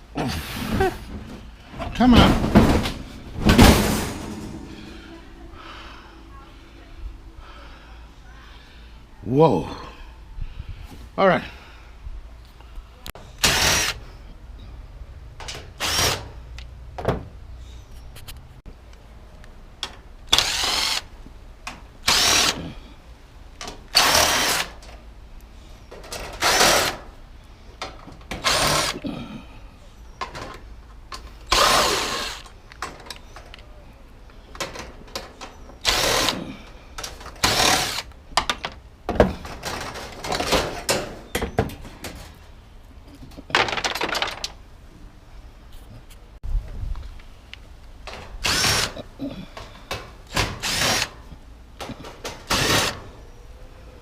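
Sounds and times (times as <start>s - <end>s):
power drill bursts: 13.4s - 14.0s, 15.8s - 16.3s, 20.3s - 21.1s, 22.0s - 22.6s, 23.9s - 24.8s, 26.4s - 27.0s, 28.4s - 29.0s, 31.5s - 32.5s, 35.8s - 36.4s, 37.4s - 38.1s, 48.4s - 49.0s, 50.3s - 51.2s, 52.5s - 53.0s.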